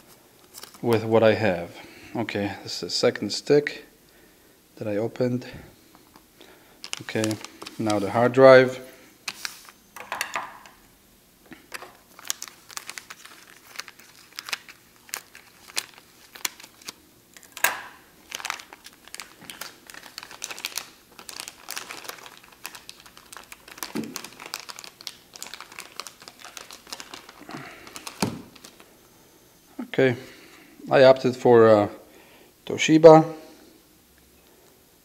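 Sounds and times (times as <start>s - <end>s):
plastic packaging crinkling: 0.0s - 1.0s, 6.0s - 8.4s, 9.2s - 9.8s, 11.6s - 29.0s.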